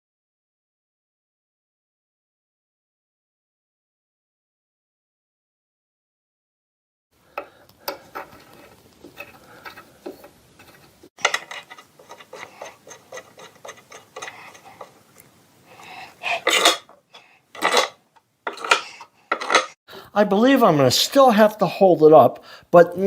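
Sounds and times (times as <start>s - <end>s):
metal hardware clicking and clinking: 7.4s - 15.3s, 16.4s - 19.8s
metal clanks and scrapes: 7.9s - 15.0s, 16.3s - 19.8s.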